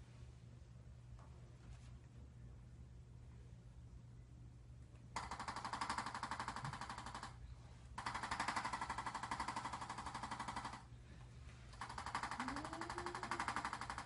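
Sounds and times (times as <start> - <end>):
electric percussion tool tapping rapidly: 5.2 - 7.3, 11.8 - 14.0.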